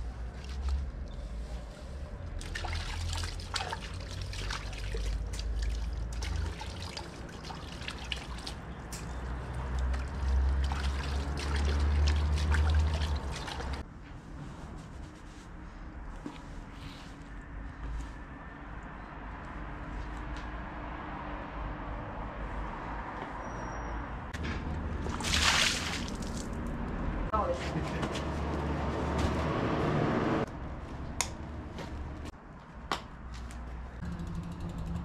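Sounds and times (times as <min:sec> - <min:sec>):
crackling splashes: 0:02.4 - 0:08.7, 0:09.3 - 0:13.8, 0:25.0 - 0:26.7
water trickling: 0:02.4 - 0:13.8.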